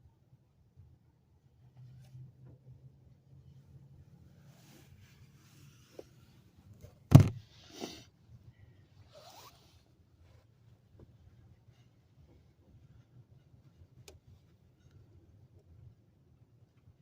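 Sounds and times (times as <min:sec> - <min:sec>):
sharp knock: 0:07.1 - 0:07.4.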